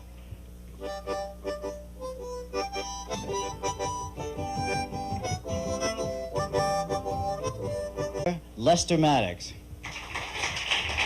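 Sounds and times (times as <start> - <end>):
harmonica melody: 0.8 - 8.5
strummed string accompaniment: 1.0 - 8.3.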